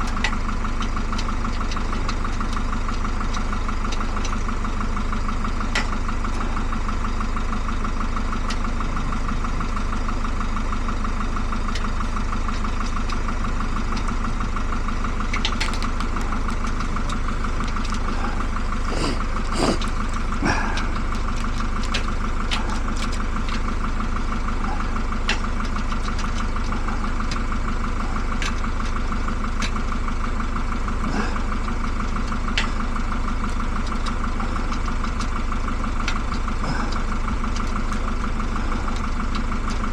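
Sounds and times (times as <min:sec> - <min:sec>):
machine humming: 0:13.1 - 0:27.0.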